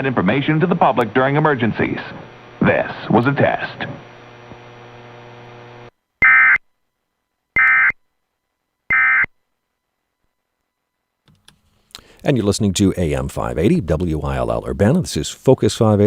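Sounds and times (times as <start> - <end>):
low steady hum: 0.0 - 16.0
digital data tone bursts: 6.2 - 6.6, 7.6 - 8.0, 8.9 - 9.3.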